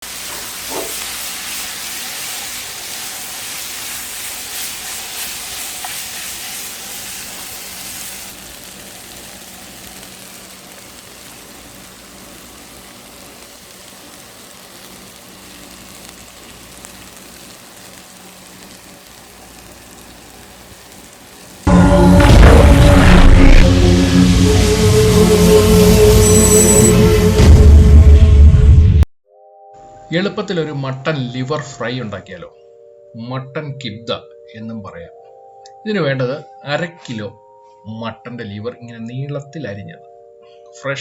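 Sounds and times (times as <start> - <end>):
food sizzling in hot oil: 0.0 - 22.0.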